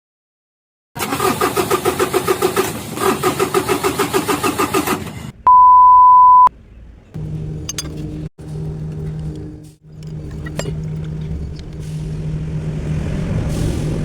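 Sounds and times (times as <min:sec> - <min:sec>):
diesel engine cranking: 0:01.0 - 0:05.4, 0:06.9 - 0:14.0
loud steady beep: 0:05.5 - 0:06.5.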